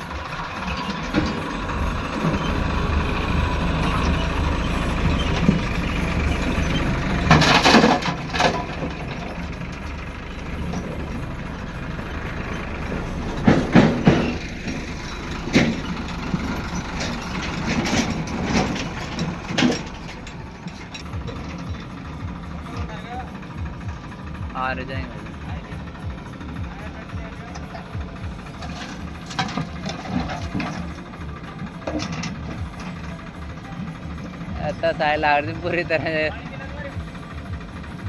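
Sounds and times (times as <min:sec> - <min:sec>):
diesel engine running: 0:00.0 - 0:38.0
loud knocks and bangs: 0:01.0 - 0:20.1.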